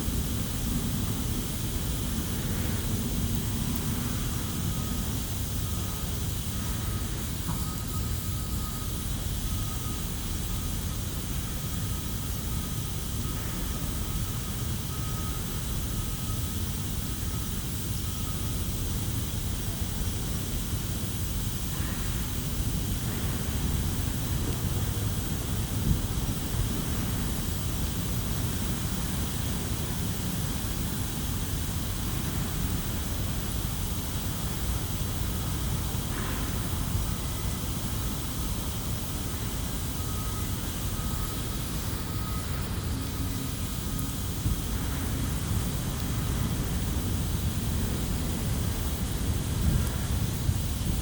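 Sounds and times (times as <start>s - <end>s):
campfire burning: 0.0s - 51.0s
even hiss: 0.0s - 51.0s
distant industrial rumble: 19.6s - 51.0s.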